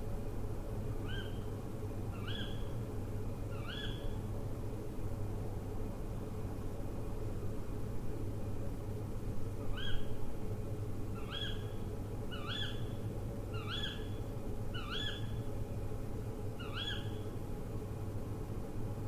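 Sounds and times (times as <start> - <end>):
owl calling: 16.6 - 17.2.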